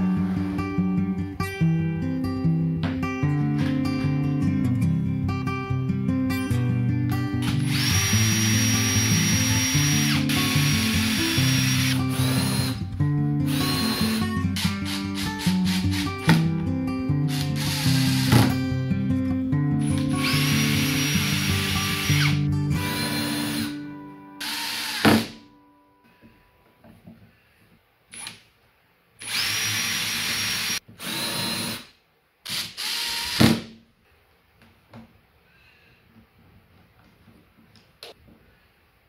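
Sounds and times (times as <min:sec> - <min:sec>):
power drill bursts: 0:07.4 - 0:12.8, 0:13.5 - 0:16.4, 0:17.3 - 0:18.6, 0:24.4 - 0:25.4, 0:29.2 - 0:31.9, 0:32.5 - 0:33.7.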